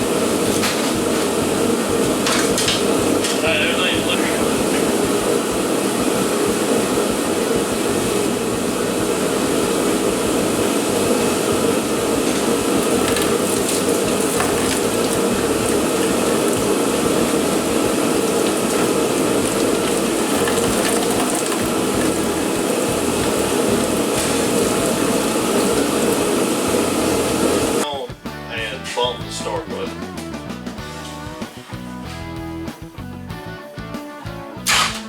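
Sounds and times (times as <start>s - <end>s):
heater blowing: 0.0s - 27.9s.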